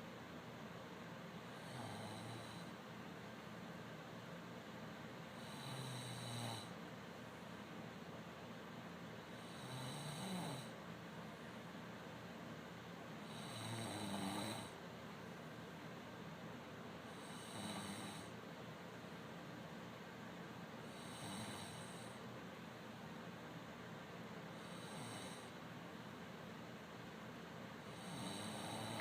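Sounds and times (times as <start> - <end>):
man snoring: 1.5 - 2.7, 5.4 - 6.7, 9.3 - 10.7, 13.2 - 14.8, 17.1 - 18.3, 20.9 - 22.2, 24.6 - 25.6, 27.9 - 29.0
rattling snore: 28.0 - 29.0.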